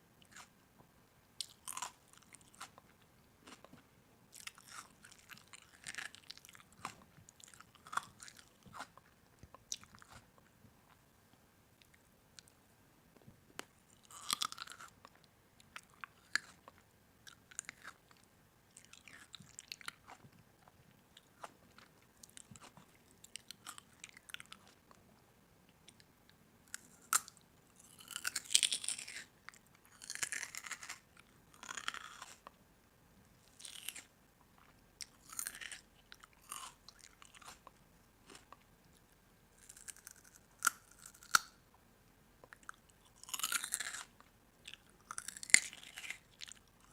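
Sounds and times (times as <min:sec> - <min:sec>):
chewing crunchy food: 0:00.2 - 0:00.6, 0:01.4 - 0:11.0, 0:13.6 - 0:25.0, 0:26.7 - 0:32.6, 0:33.4 - 0:41.6, 0:42.4 - 0:46.9.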